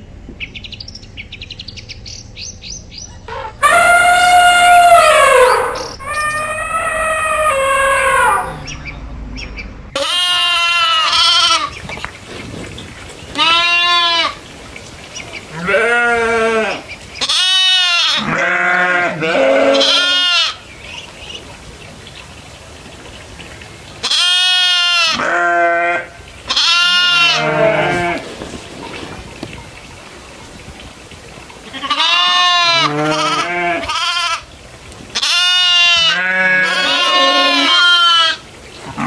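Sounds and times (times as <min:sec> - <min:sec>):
goats bleating: 0:10.0 - 0:12.6, 0:13.2 - 0:14.4, 0:15.4 - 0:20.6, 0:24.0 - 0:29.5, 0:31.6 - 0:34.5, 0:35.2 - 0:39.0.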